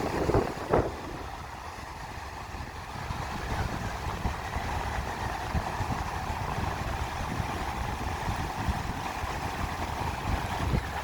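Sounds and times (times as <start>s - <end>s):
sea surf on beach: 0.0s - 11.0s.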